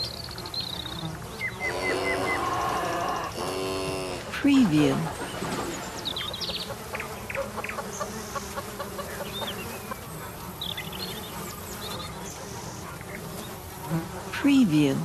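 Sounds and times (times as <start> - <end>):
songbirds chirping and trilling: 0.0 - 15.0
hens clucking: 1.6 - 10.6.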